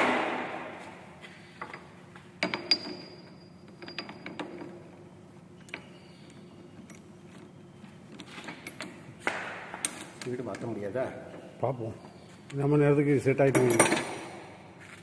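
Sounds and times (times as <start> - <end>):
faint steady hum: 0.0 - 15.0
metallic clinks and knocks: 1.6 - 5.0, 13.5 - 14.4.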